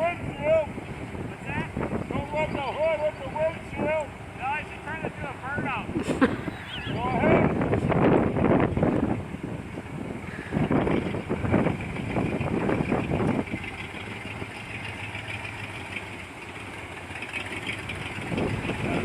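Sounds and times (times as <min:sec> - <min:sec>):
pickup truck engine running: 0:00.0 - 0:19.0.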